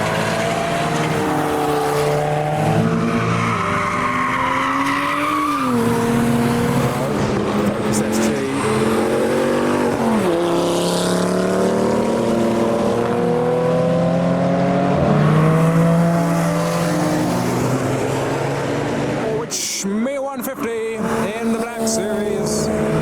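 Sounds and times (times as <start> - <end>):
car engine accelerating hard: 0.0 - 19.4, 21.0 - 23.0.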